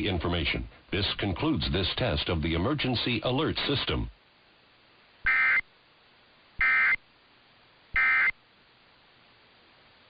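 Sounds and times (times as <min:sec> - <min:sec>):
digital data tone bursts: 0:05.3 - 0:05.7, 0:06.6 - 0:07.0, 0:08.0 - 0:08.4.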